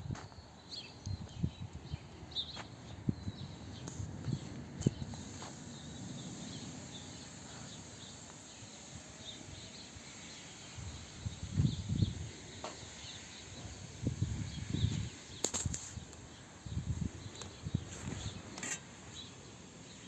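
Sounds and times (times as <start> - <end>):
faint insect chirping: 5.1 - 20.0.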